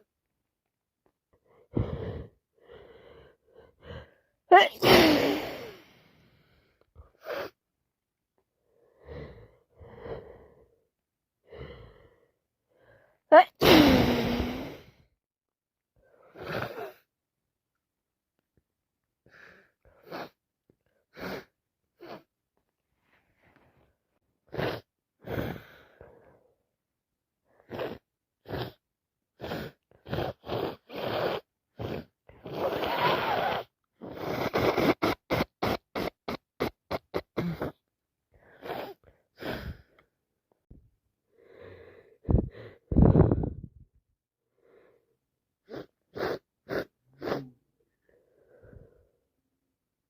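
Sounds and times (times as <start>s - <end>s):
woman sneezing: 4.5s - 5.7s, 13.3s - 14.7s
sharp gasping breaths: 29.4s - 40.1s.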